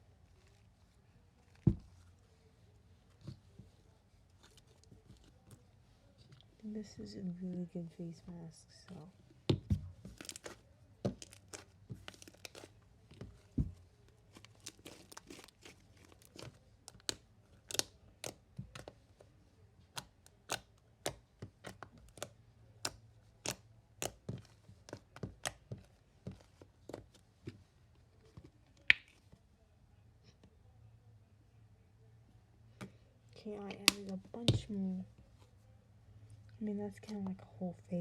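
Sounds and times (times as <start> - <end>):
hands kneading sticky slime: 8.4 - 29.3.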